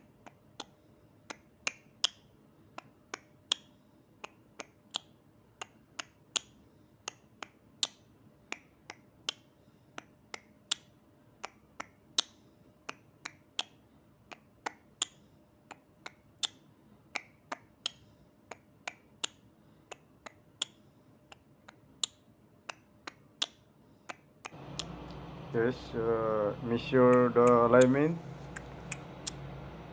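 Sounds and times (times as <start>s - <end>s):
faint steady hum: 0.0s - 29.9s
sharp clicks: 27.0s - 29.6s.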